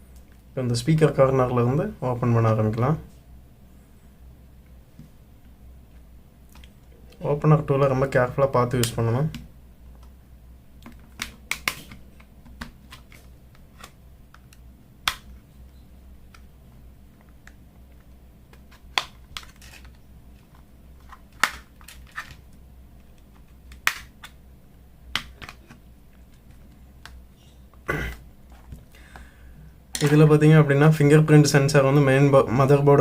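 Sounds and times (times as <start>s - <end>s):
steady low hum: 0.0s - 33.0s
plastic clips clicking and snapping: 10.8s - 15.3s.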